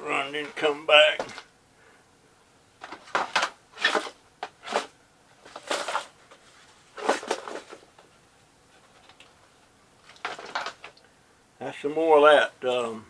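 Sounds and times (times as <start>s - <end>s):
objects rustling and scraping: 0.0s - 1.5s, 2.8s - 11.0s.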